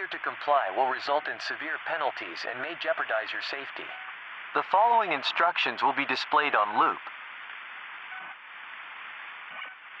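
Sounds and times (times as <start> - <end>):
broadcast static hiss: 0.0 - 10.0.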